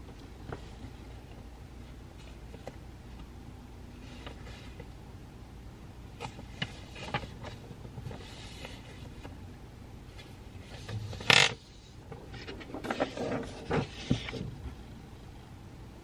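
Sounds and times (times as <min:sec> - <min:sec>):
paper rustle: 0:06.2 - 0:09.3.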